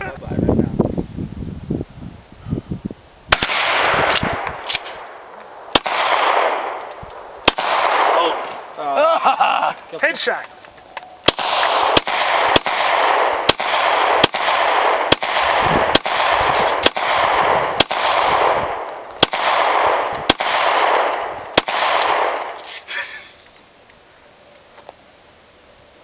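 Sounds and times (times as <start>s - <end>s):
gunshots with long echo: 3.3s - 8.9s, 11.2s - 22.9s.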